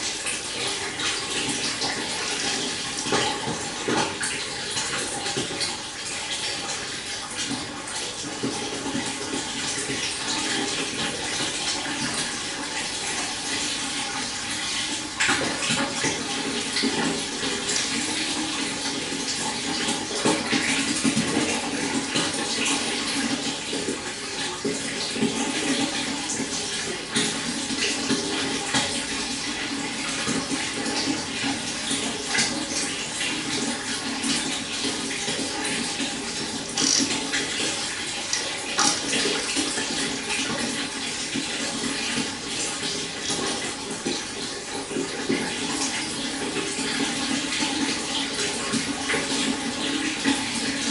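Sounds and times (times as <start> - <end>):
stream babbling: 36.8 - 37.2.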